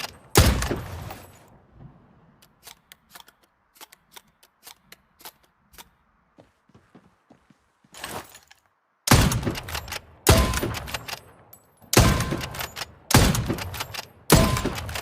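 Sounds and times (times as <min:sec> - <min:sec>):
rifle shot with echo: 0:11.9 - 0:15.0.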